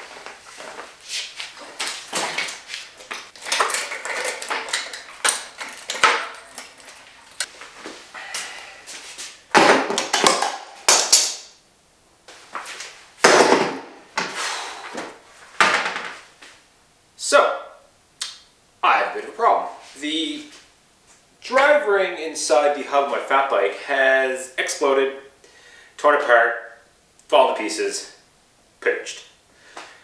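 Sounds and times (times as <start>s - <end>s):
hand tools and metal parts clattering: 0.5s - 11.2s.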